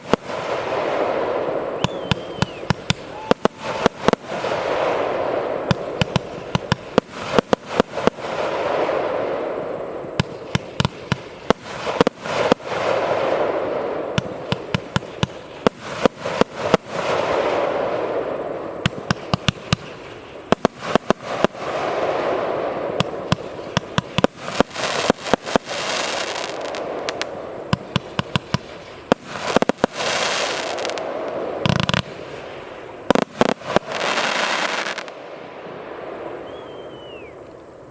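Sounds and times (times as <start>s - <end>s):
fireworks bangs: 0.0s - 37.9s
fireworks hissing and crackling: 0.0s - 37.9s.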